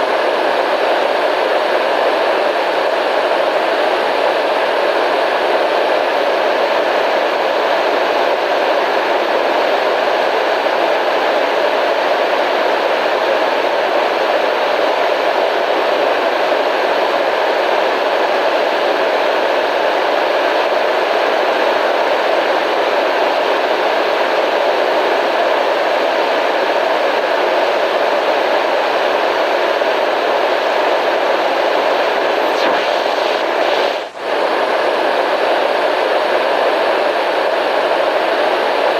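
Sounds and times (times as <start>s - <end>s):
white noise hiss: 30.8s - 38.9s.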